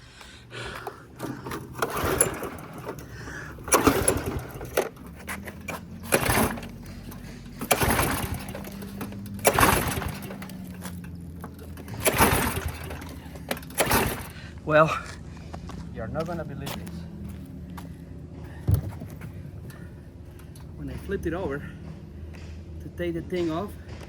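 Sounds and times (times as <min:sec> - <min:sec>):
recoil starter rope pulls: 0:00.0 - 0:15.2
engine turning over: 0:00.0 - 0:22.2.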